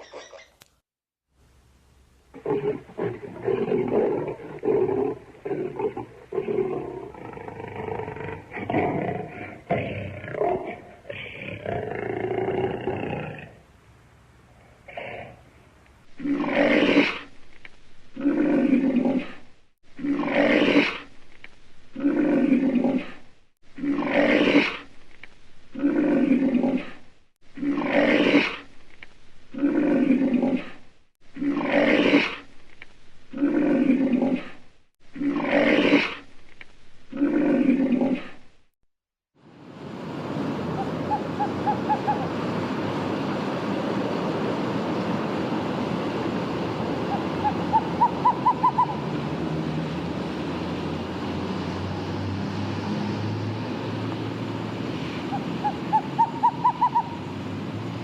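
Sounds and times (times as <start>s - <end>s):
steady wind or surf noise: 39.4s - 56.2s.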